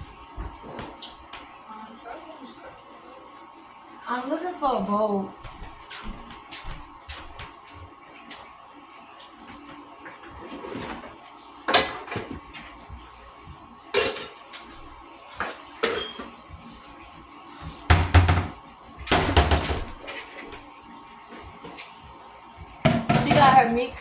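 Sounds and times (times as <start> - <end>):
dishes clattering: 11.7 - 12.4, 13.9 - 14.7, 15.4 - 16.4, 17.8 - 20.6, 22.8 - 24.0.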